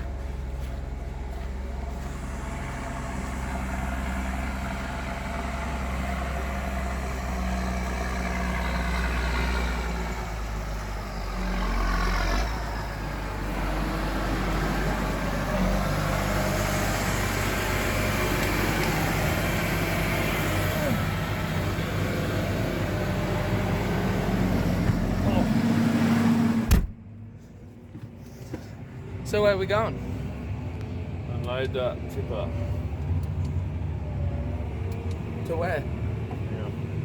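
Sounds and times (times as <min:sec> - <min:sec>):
heavy vehicle engine running: 0:00.0 - 0:37.0.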